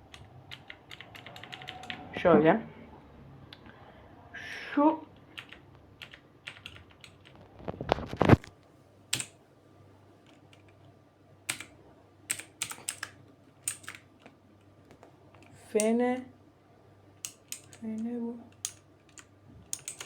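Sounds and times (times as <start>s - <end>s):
mechanical keyboard key clicks: 12.3s - 14.0s, 17.2s - 17.8s, 18.5s - 20.0s.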